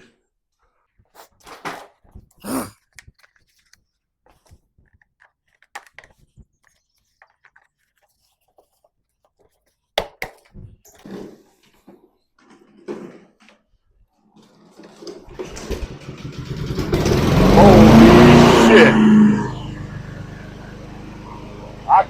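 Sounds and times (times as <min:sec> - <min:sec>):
handling clicks and rustles: 0:01.3 - 0:11.4.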